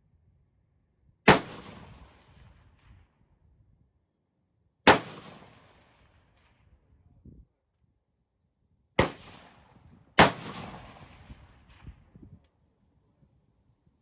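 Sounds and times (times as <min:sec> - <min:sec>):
gunshots with rolling echo: 0:01.3 - 0:02.4, 0:04.9 - 0:06.0, 0:09.0 - 0:11.9.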